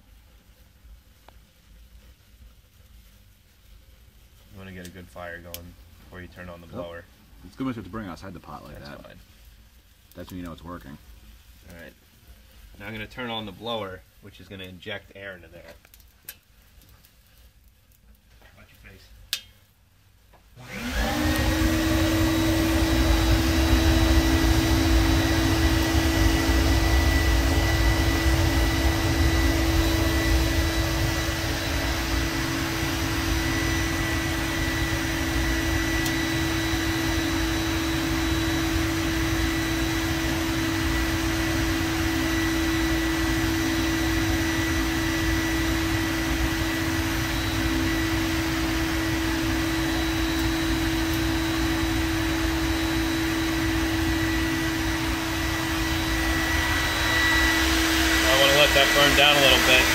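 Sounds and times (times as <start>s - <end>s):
electric blower humming: 20.6s - 59.9s
low rumble: 21.5s - 42.8s, 44.0s - 59.9s.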